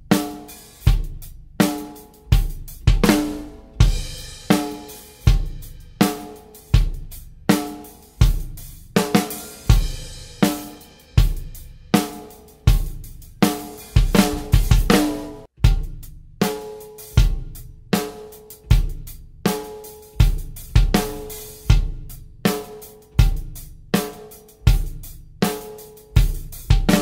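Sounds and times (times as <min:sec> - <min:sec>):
drum kit playing a groove: 0:00.0 - 0:27.0
bass drum kicks: 0:02.3 - 0:04.4, 0:05.3 - 0:05.8, 0:14.0 - 0:16.1, 0:20.2 - 0:22.1, 0:23.2 - 0:23.6.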